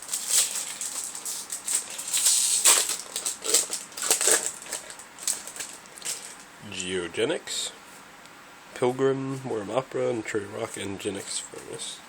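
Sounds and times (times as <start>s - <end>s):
foil wrapper crinkling: 0.0s - 6.5s.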